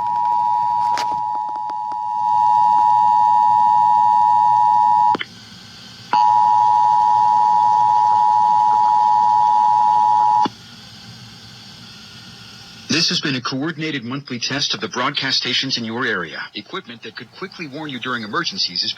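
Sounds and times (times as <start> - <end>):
radio hiss: 0.0 - 18.9
click: 5.1 - 5.3.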